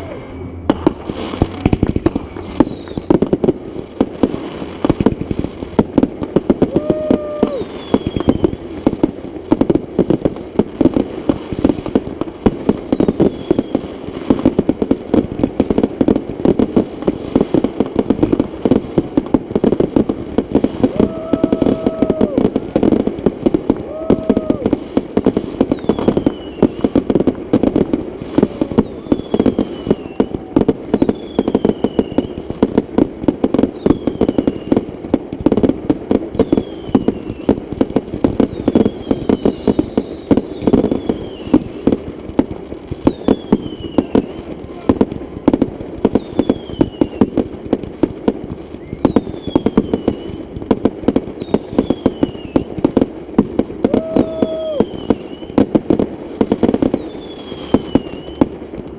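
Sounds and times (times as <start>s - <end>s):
high falling whistle: 0.0s - 3.2s
fireworks bangs and crackles: 0.0s - 58.9s.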